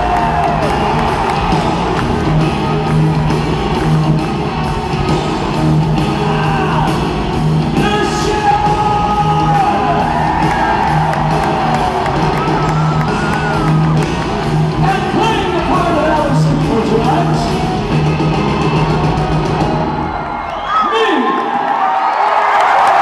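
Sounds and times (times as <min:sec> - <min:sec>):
live hard rock band: 0:00.0 - 0:20.2
singer yelling: 0:07.8 - 0:10.2.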